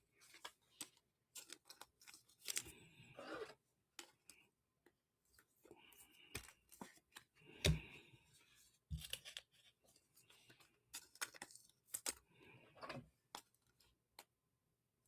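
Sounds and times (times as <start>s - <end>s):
cards and packaging rustling: 0.1s - 4.4s, 8.5s - 14.4s.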